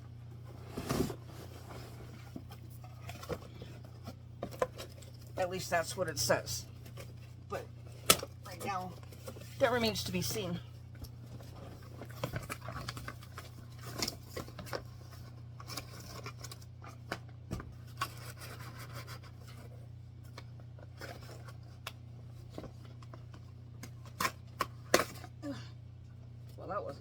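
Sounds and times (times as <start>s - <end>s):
cardboard packaging rustling: 0.1s - 5.4s, 6.7s - 25.3s.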